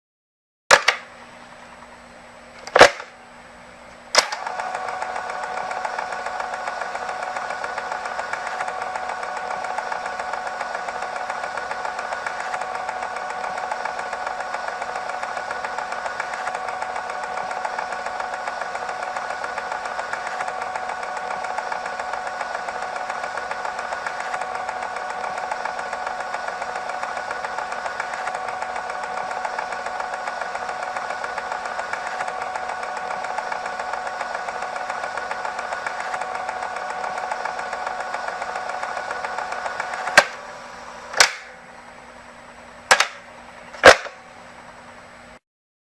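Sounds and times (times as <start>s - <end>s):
projector sharp click: 0.7s - 1.1s, 2.6s - 3.2s, 4.1s - 8.8s, 39.6s - 40.4s, 41.1s - 41.6s, 42.9s - 44.2s
film projector whirring: 0.7s - 45.4s.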